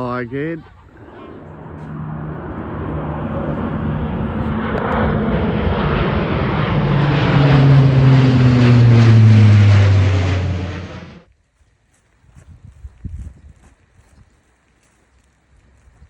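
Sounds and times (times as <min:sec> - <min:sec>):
propeller aircraft passing over: 0:00.0 - 0:11.3.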